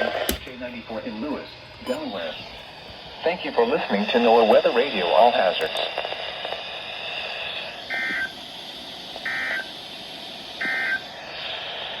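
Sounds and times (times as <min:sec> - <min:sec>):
radio hiss: 0:03.2 - 0:12.0.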